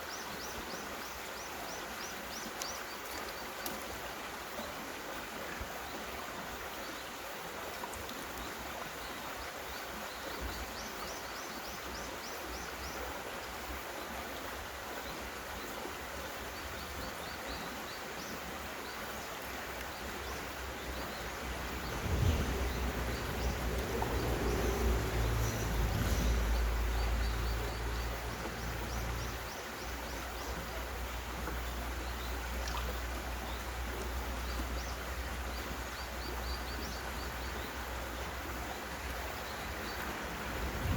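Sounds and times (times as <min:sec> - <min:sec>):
stream running over rocks: 0:00.0 - 0:40.9
low rumble: 0:21.4 - 0:27.5.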